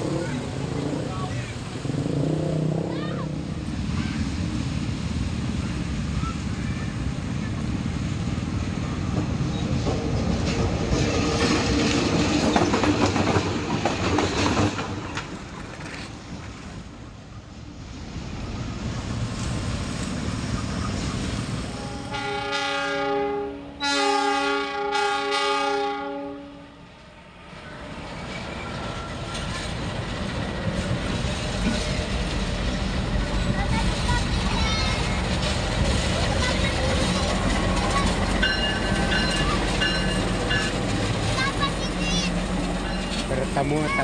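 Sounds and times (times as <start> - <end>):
train wheels clattering on rails: 9.0 - 17.0, 28.1 - 44.0
locomotive horn blasts: 21.8 - 26.8.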